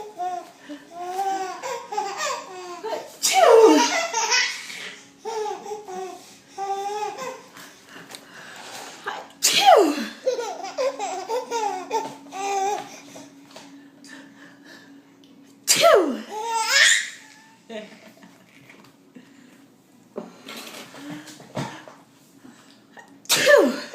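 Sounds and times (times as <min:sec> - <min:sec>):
baby laughing: 0:01.1 - 0:07.5, 0:10.2 - 0:12.9, 0:16.3 - 0:17.6
loud sneezes: 0:03.2 - 0:03.9, 0:09.4 - 0:10.2, 0:15.7 - 0:16.3, 0:23.3 - 0:23.9.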